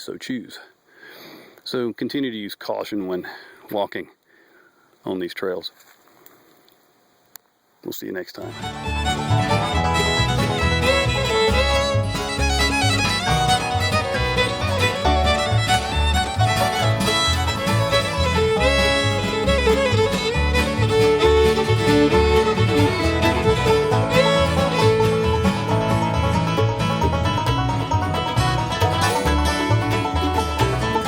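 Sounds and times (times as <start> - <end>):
bluegrass music with fiddle: 8.4 - 31.0.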